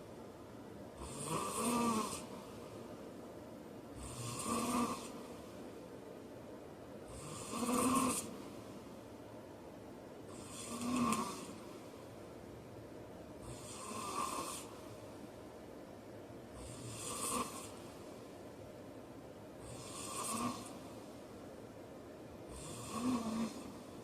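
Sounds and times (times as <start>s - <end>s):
man snoring: 1.0s - 2.3s, 4.0s - 5.2s, 7.1s - 8.3s, 10.3s - 11.6s, 13.4s - 14.7s, 16.6s - 17.8s, 19.6s - 20.8s, 22.5s - 23.8s.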